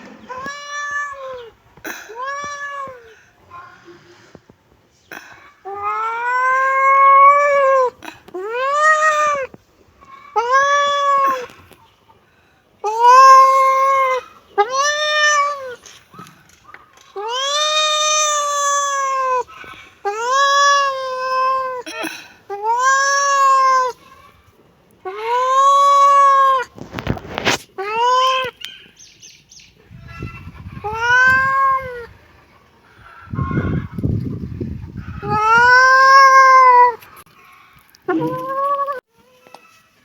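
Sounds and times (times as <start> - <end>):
kitten meowing: 0.2 - 1.5, 10.4 - 11.5, 20.1 - 21.8, 22.5 - 24.0, 30.4 - 32.1, 35.2 - 37.0, 38.1 - 39.0.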